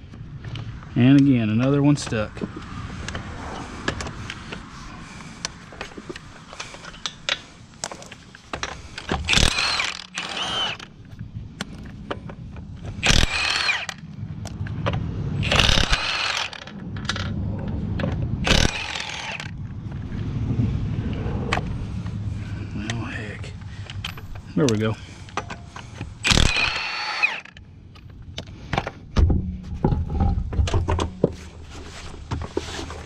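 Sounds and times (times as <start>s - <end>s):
hand tools clicking and clanking: 5.4s - 17.4s, 23.6s - 29.0s.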